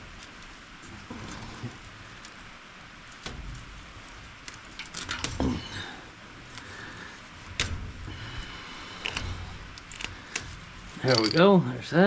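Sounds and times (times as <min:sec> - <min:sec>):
clicks and knocks on a roller: 0:09.0 - 0:11.5.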